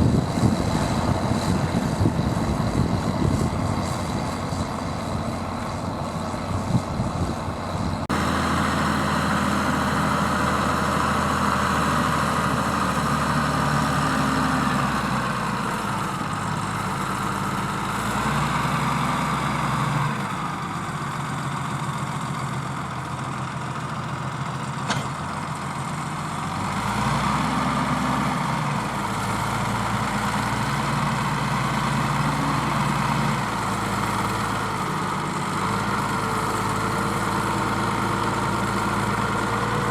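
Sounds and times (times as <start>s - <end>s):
tractor diesel engine pulling: 0.0s - 39.9s.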